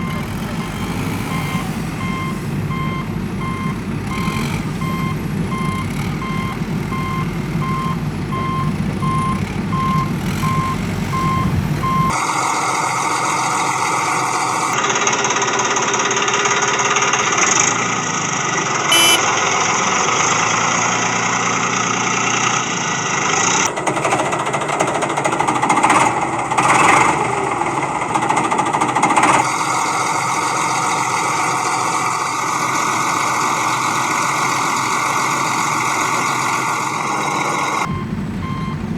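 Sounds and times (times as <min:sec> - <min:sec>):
reversing alarm beeping: 0:00.0 - 0:12.3, 0:18.9 - 0:19.3, 0:34.3 - 0:38.8
low engine rumble: 0:00.0 - 0:14.8, 0:27.2 - 0:38.9
noisy heavy machinery: 0:00.0 - 0:38.9.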